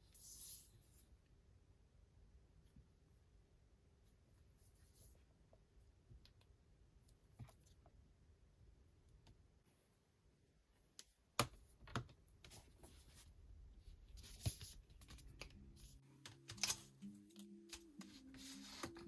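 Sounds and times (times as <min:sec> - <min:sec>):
soft background music: 0:14.3 - 0:19.0.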